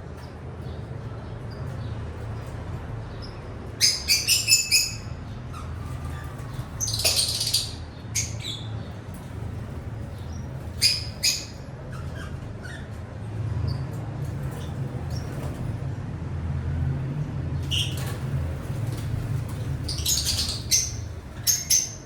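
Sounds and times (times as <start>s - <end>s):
birds chirping: 0.1s - 15.8s, 17.6s - 22.0s
shrill bird calls: 3.8s - 8.7s, 10.7s - 12.9s.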